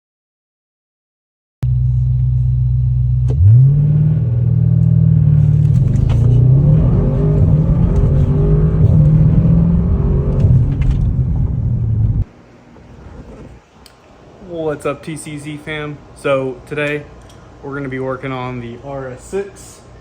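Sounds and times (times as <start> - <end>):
car engine revving: 1.7 - 12.3.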